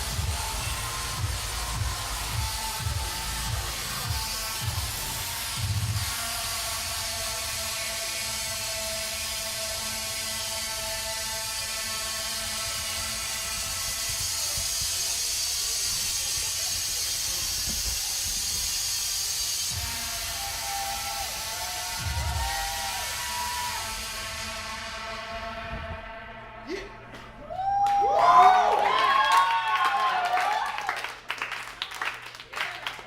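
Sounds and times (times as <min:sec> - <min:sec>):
dense rattling hiss: 0:00.0 - 0:25.0.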